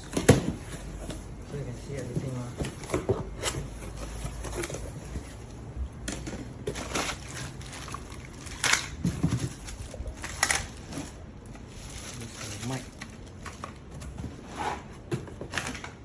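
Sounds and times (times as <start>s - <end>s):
packaging rustling and crinkling: 2.0s - 5.6s, 6.3s - 14.5s.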